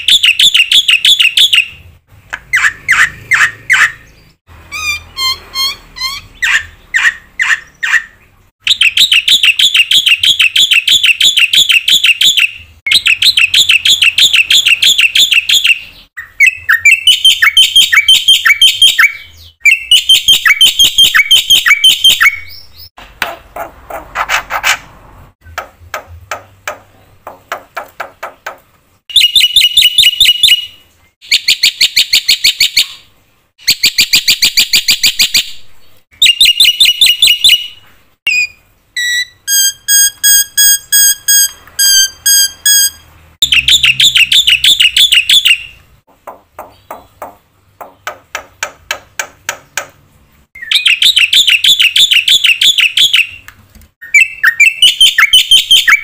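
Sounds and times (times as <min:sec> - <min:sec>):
clear whistled notes: 0:38.3 - 0:45.4.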